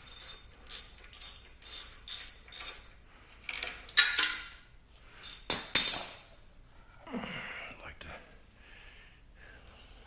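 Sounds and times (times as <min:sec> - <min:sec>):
metal tools jingling and clinking: 0:00.0 - 0:06.4.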